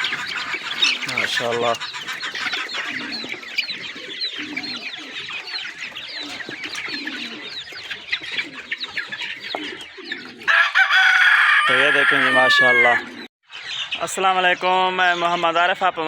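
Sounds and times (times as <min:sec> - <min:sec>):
chicks peeping: 0:00.0 - 0:16.0
hens clucking: 0:00.0 - 0:16.0
loud drawn-out chicken call: 0:10.4 - 0:13.3.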